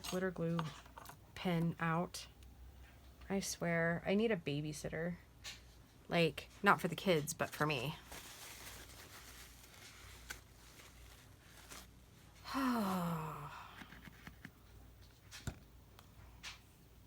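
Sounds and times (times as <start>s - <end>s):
woman sighing: 12.4s - 13.9s.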